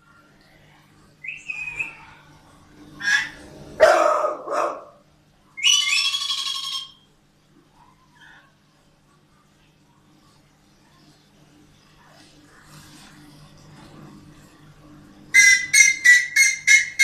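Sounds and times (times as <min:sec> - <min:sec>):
bird calls: 0:05.6 - 0:07.0.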